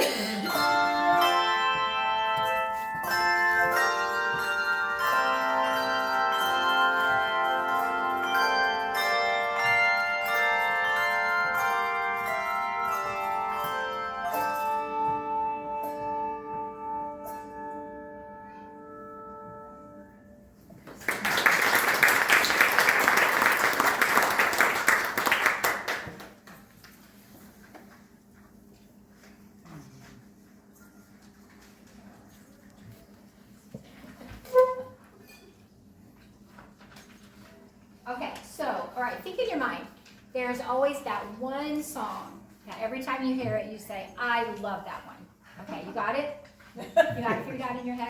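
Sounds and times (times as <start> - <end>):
handbell choir playing chords: 0.0 - 20.4
audience applause: 20.9 - 26.4.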